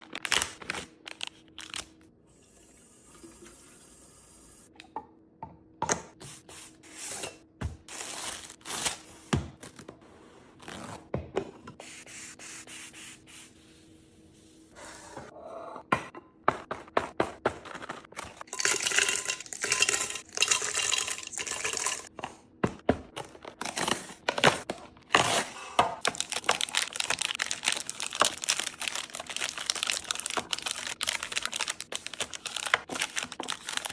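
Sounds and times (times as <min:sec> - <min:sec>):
plastic packaging crinkling: 0:00.0 - 0:01.9, 0:26.0 - 0:33.9
groceries clicking and clinking: 0:16.6 - 0:33.9.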